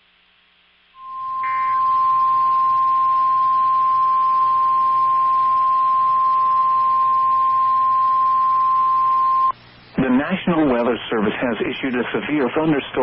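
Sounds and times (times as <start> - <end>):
faint radio hiss: 0.0 - 13.0
steady high alarm beep: 1.0 - 9.5.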